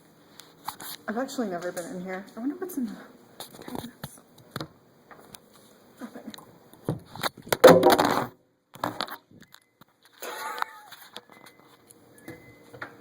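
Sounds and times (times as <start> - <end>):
clattering bang: 7.5 - 8.3.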